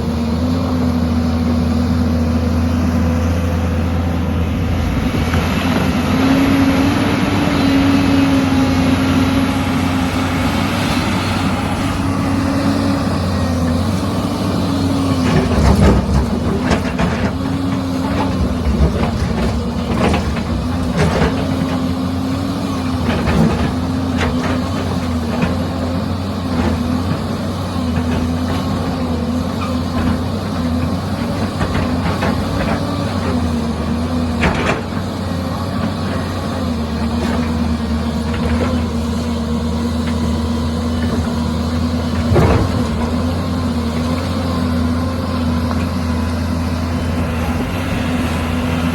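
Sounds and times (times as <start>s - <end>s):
excavator diesel engine running: 0.0s - 48.9s.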